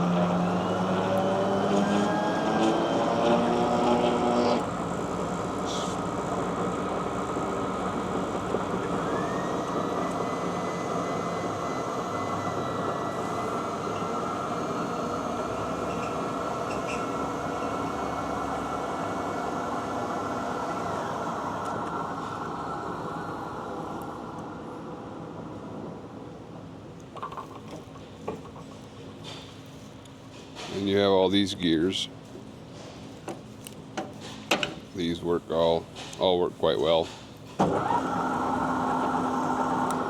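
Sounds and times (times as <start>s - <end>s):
lathe whirring: 0.0s - 24.3s.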